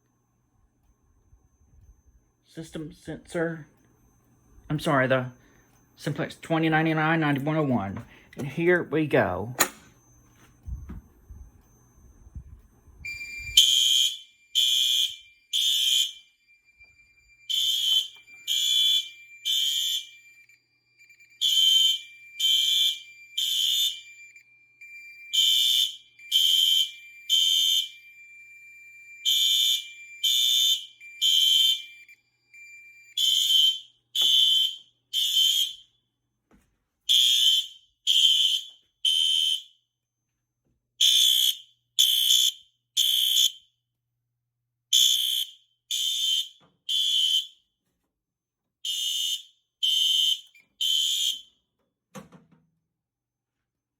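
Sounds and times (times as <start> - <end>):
fire alarm horn blasts: 8.6 - 36.1, 37.1 - 40.0, 41.0 - 43.8, 44.9 - 47.7, 48.8 - 51.6.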